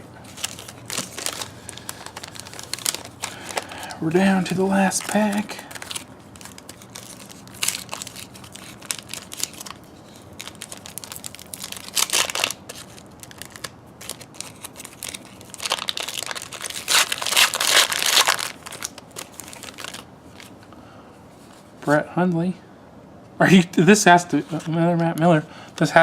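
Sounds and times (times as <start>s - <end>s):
wrapper tearing and crinkling: 0.2s - 20.5s.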